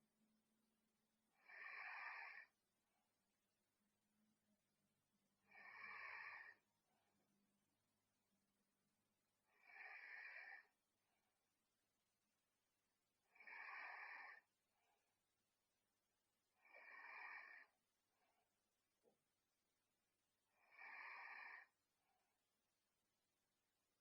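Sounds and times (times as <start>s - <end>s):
girl snoring softly: 1.3s - 2.6s, 5.4s - 6.7s, 9.4s - 10.8s, 13.2s - 14.6s, 16.5s - 17.8s, 20.4s - 21.8s.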